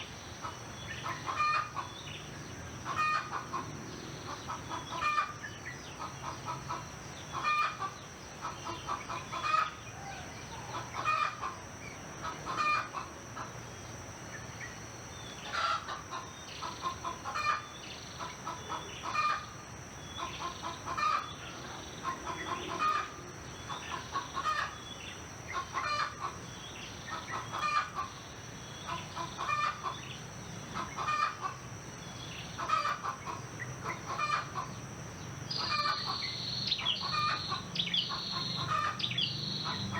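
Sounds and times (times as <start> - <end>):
chickens clucking: 0.4 - 1.9, 2.9 - 9.8, 10.5 - 13.5, 20.2 - 24.8, 25.5 - 26.4, 27.1 - 28.2, 28.9 - 30.1, 30.8 - 31.6, 32.6 - 34.8, 35.5 - 39.9.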